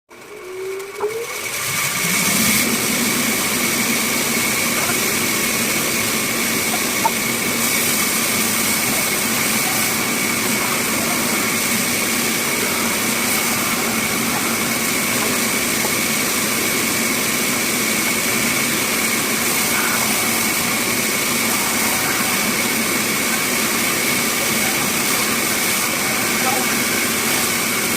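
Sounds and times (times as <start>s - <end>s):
bandsaw whining: 0.1s - 27.9s.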